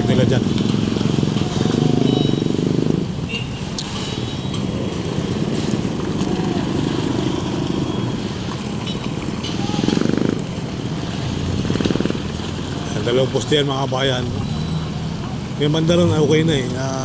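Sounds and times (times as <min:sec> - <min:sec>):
street traffic: 0:00.0 - 0:17.0
small motorcycle engine running: 0:09.3 - 0:12.6.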